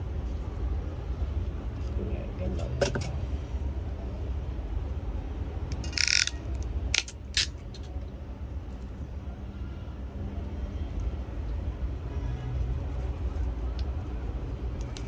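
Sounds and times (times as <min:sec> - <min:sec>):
sharp clicks: 0:05.7 - 0:07.9
cutting tool snipping wire: 0:05.8 - 0:07.9.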